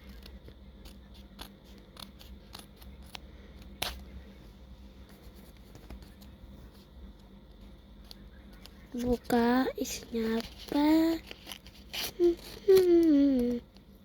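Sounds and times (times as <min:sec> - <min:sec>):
scissors cutting paper: 0:00.0 - 0:04.0.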